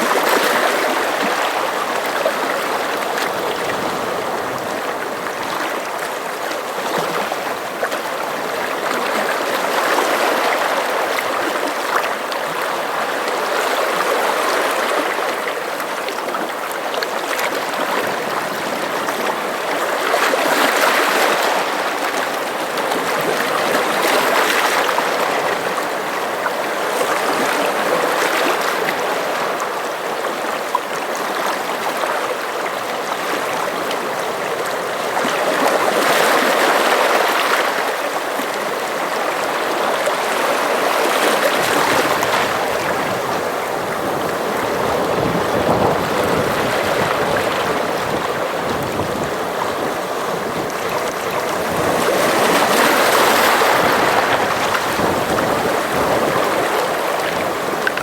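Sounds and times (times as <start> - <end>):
sea waves washing: 33.3 - 58.0.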